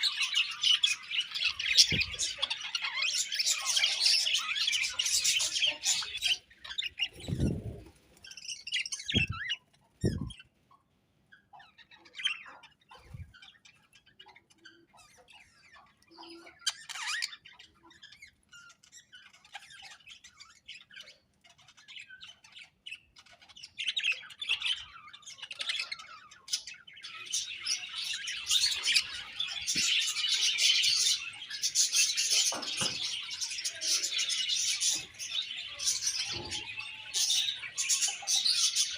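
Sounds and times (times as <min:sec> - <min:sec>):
budgerigars chirping: 0:00.0 - 0:10.5, 0:11.3 - 0:38.9.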